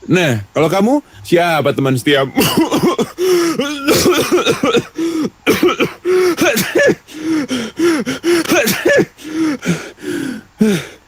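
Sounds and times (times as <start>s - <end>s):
person coughing: 2.3s - 9.8s.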